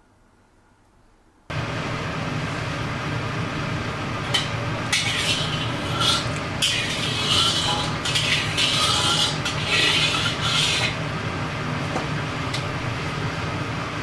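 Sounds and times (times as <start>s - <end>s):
steady low hum: 0.4s - 14.0s
metal spatula scraping a wok: 4.3s - 11.1s.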